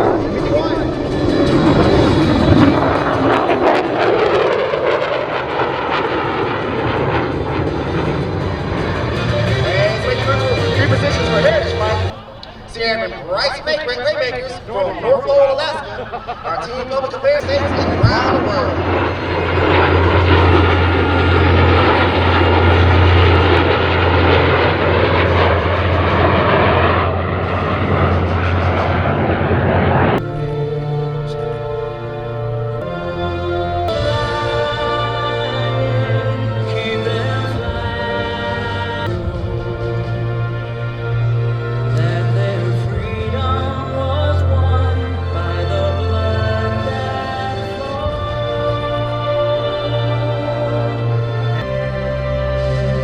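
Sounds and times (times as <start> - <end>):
deep steady drone: 0.0 - 53.0
loud fighter jet noise: 0.0 - 53.0.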